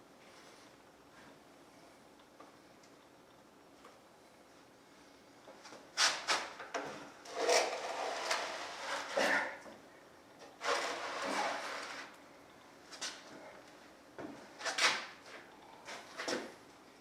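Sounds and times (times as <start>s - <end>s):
heavy machine part scraping: 7.2s - 9.6s, 10.6s - 12.2s.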